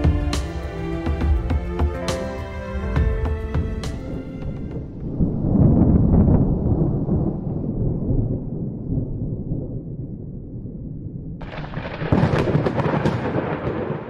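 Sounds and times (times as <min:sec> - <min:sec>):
thunder rumbling: 0:02.8 - 0:14.0.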